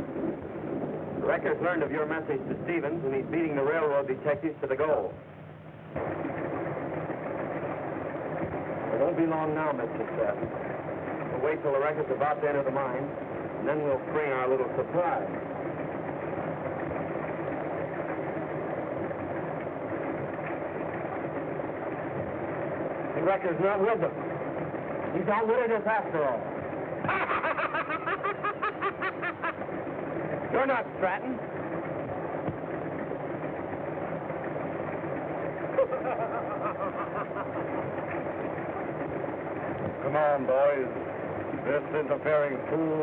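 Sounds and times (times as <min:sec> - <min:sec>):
rushing background noise: 0:00.0 - 0:43.0
car engine running: 0:28.5 - 0:43.0.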